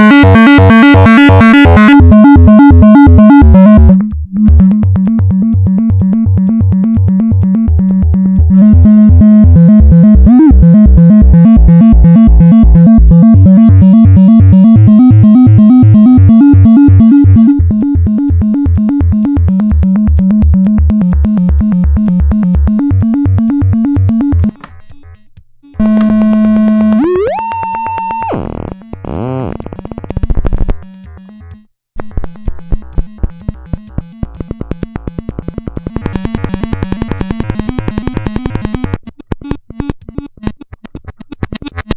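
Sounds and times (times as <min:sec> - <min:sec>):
synthesizer arpeggio: 0:00.0 - 0:24.6, 0:25.8 - 0:28.9.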